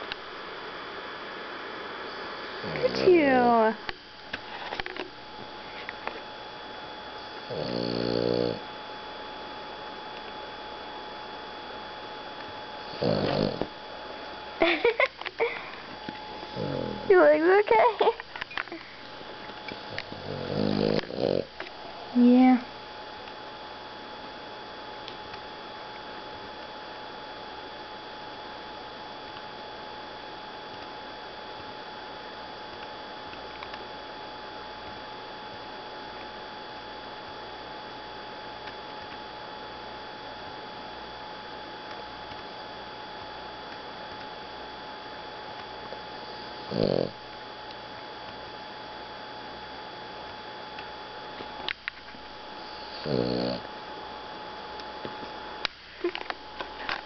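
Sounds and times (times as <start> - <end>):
thin whine: 0.0 - 57.0
dog snoring: 2.6 - 3.1, 7.4 - 8.8, 12.8 - 13.8, 16.3 - 17.7, 19.7 - 22.1, 46.2 - 47.3, 52.6 - 53.8.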